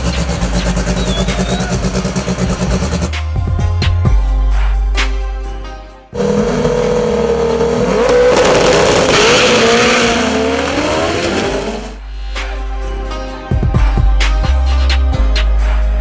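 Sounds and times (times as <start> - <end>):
car engine at high revs: 0.0 - 3.1, 6.2 - 12.0.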